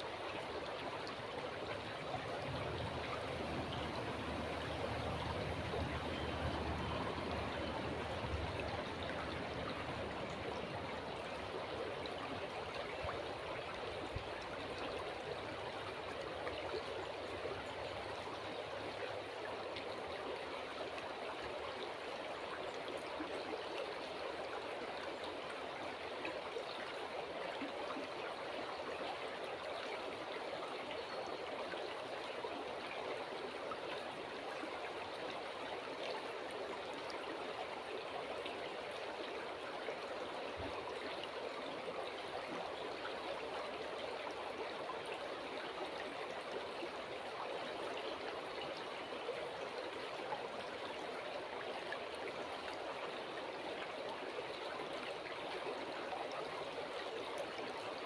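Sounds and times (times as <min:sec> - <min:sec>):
river flowing: 0:00.0 - 0:58.0.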